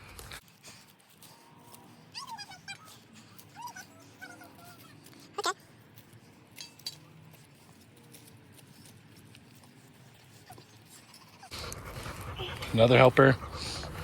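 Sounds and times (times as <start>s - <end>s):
faint clicks and rustles of cutting: 0.1s - 12.7s
dog yipping: 2.1s - 5.6s, 10.5s - 11.6s.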